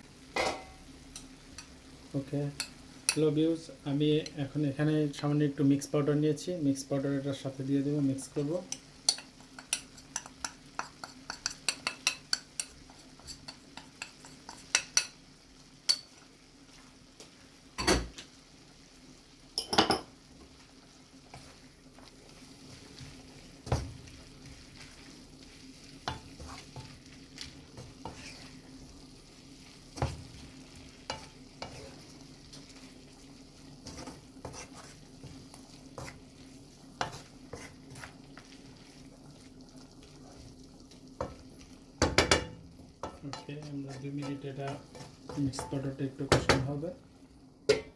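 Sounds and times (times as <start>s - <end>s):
food sizzling in a frying pan: 0.0s - 47.9s
spatula clicking and scraping pan: 0.3s - 3.4s, 8.4s - 18.3s, 19.6s - 46.7s.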